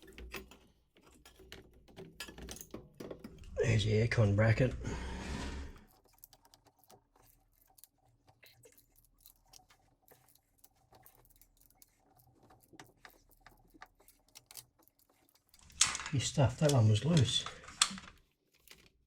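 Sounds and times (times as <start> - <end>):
hand tools clicking and tapping: 0.0 - 3.4.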